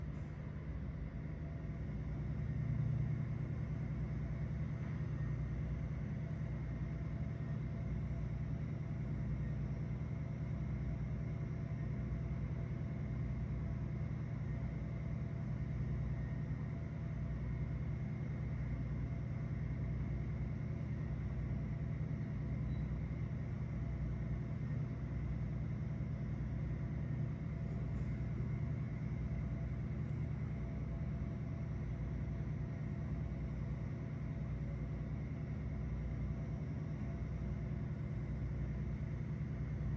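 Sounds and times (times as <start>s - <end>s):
faint steady tones: 0.0s - 39.9s
vehicle engine rumbling drone: 26.5s - 39.9s.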